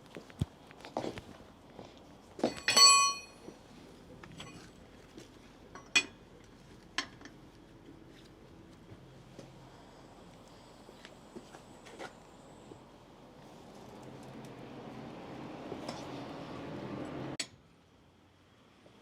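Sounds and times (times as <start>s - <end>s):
lug wrench clanking on lug nuts: 2.4s - 3.3s.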